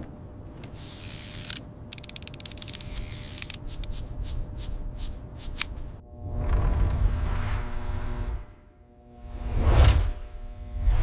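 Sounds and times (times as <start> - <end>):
dry clicks and rattles: 0.6 - 4.0
suspense whoosh sting: 6.0 - 11.0.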